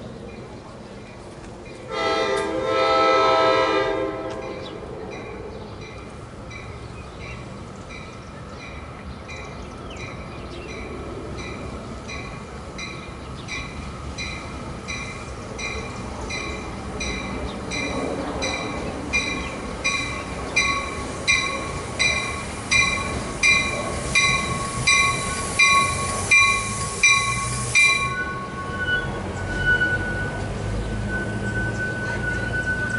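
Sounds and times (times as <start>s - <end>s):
train passing: 0.0s - 32.9s
high wheel squeal: 22.0s - 32.9s.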